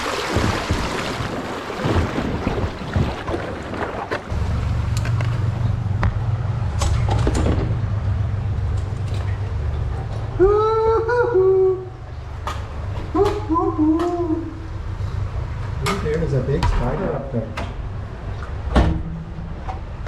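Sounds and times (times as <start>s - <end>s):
paddled boat knocks and water: 0.0s - 4.4s
steady low rumble: 4.3s - 20.0s
person humming or speaking: 10.4s - 12.0s, 13.1s - 14.6s.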